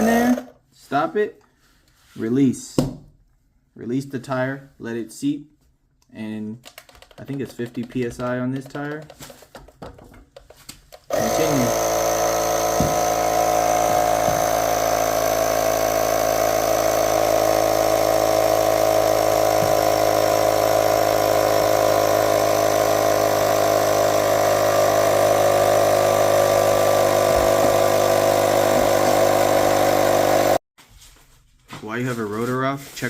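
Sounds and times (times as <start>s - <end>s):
electric tire inflator humming: 0.0s - 0.5s, 11.1s - 30.6s.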